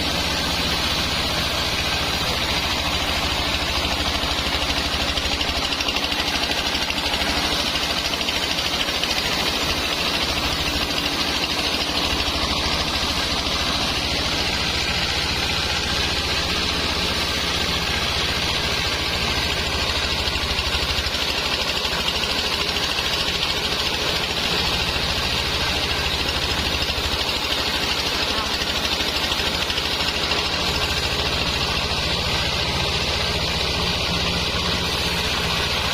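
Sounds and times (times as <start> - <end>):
sawmill machinery droning: 0.0 - 35.9.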